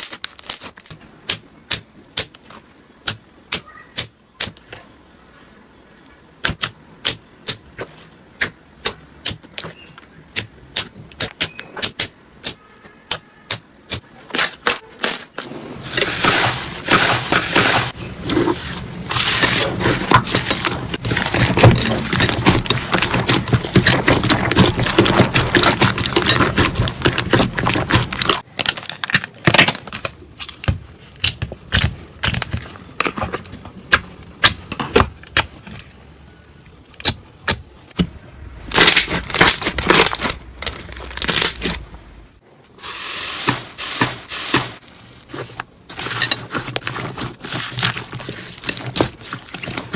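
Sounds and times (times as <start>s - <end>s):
slime crackling and squishing: 14.3s - 35.5s, 37.0s - 49.9s.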